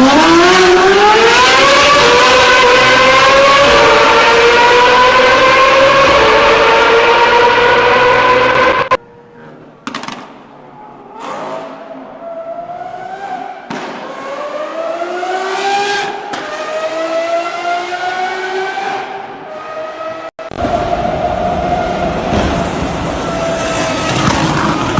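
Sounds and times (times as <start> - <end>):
car engine accelerating: 0.0 - 9.0, 14.2 - 24.9.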